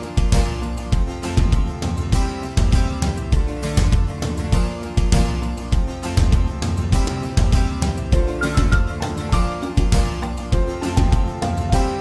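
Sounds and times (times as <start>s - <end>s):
instrumental music with guitar: 0.0s - 12.0s.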